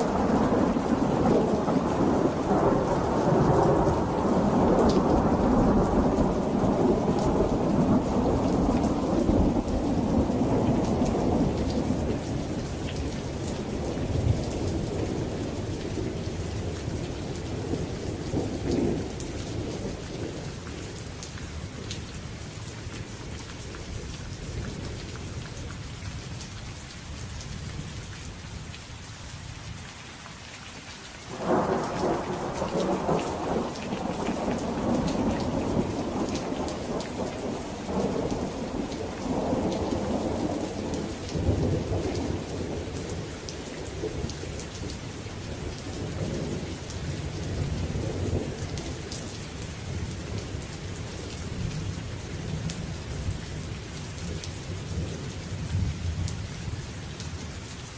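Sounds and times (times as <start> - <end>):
thunder rumbling: 0.0 - 20.5, 31.3 - 50.6
steady rain falling: 0.0 - 57.9.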